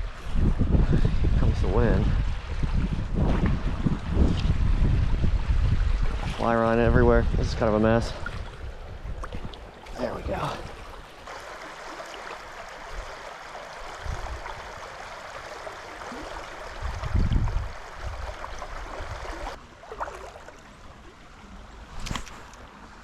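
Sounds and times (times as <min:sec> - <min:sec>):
wind buffeting microphone: 0:00.0 - 0:11.3, 0:13.8 - 0:15.1, 0:16.1 - 0:19.6
stream running: 0:00.0 - 0:23.0.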